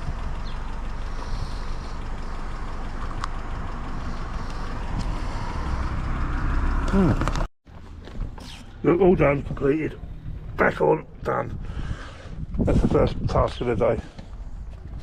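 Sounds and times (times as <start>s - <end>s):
car engine idling: 0.0s - 7.5s.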